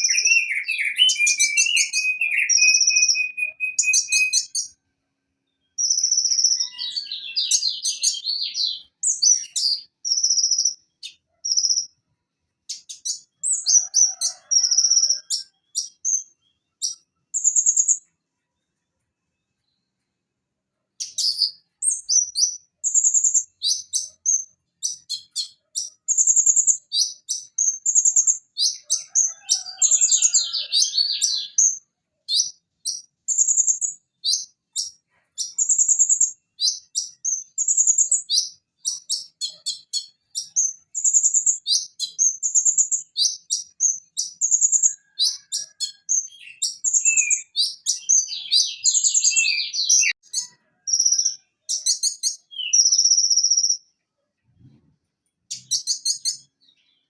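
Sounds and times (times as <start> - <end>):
sunbird singing: 0.0 - 4.8, 5.5 - 11.9, 12.7 - 18.1, 21.0 - 53.8.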